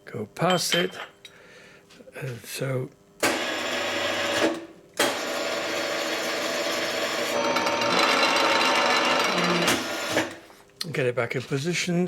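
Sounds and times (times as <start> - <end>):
machine motor running: 3.3 - 10.4.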